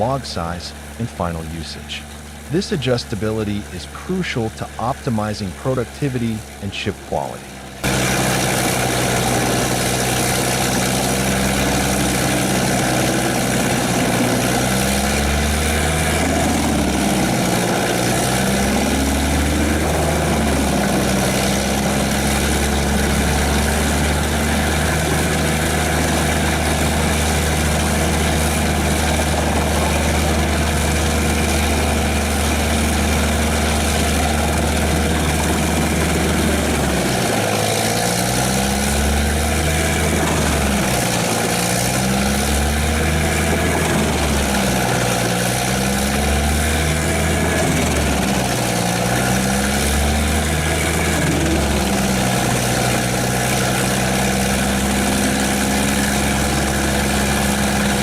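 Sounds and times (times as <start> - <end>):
wood chipper engine running: 0.0 - 58.0.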